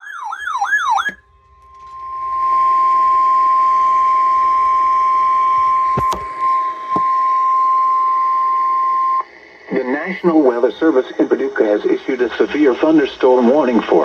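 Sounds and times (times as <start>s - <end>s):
warbling siren-like sweep: 0.0s - 9.0s
steady high alarm tone: 0.0s - 14.0s
radio static hiss: 0.9s - 14.0s.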